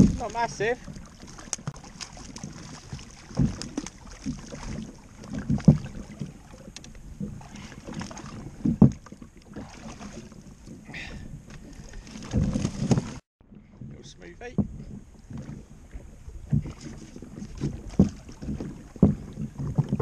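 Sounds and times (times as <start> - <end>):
wind: 0.0 - 20.0
low thuds: 10.7 - 20.0.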